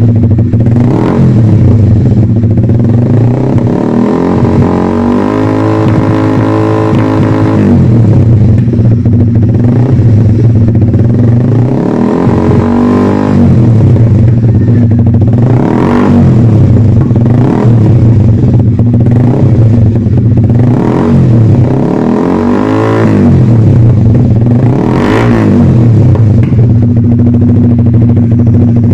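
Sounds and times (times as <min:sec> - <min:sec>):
motorcycle engine revving: 0:00.0 - 0:28.9.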